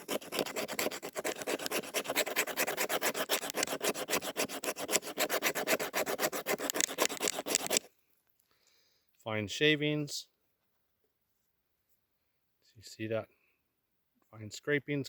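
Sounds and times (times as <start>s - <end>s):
knife spine scraping wood: 0.0s - 7.9s.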